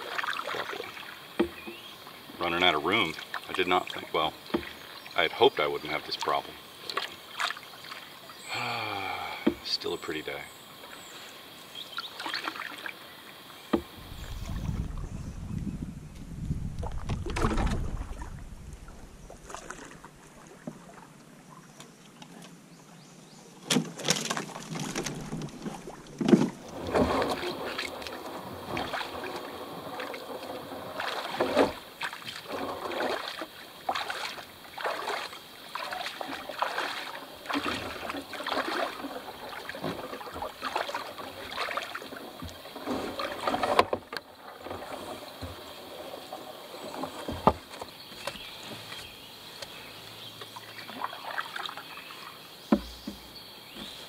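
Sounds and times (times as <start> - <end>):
paddle strokes splashing water: 0.0 - 15.3, 16.7 - 22.6, 23.6 - 54.0
knocks on canoe hull: 1.4 - 1.8, 13.7 - 14.0, 47.2 - 48.4, 52.7 - 54.0.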